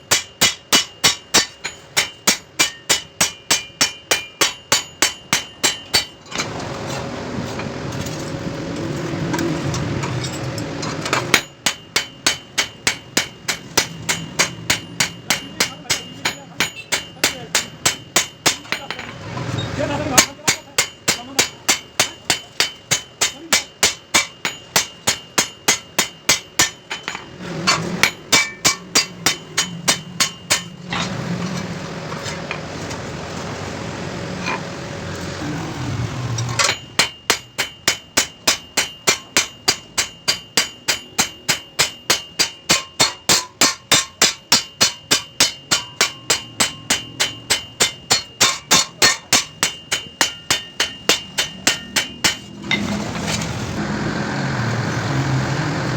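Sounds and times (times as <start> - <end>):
hammer striking blade on anvil: 0.0 - 6.5, 10.2 - 19.3, 20.1 - 31.2, 36.4 - 53.4.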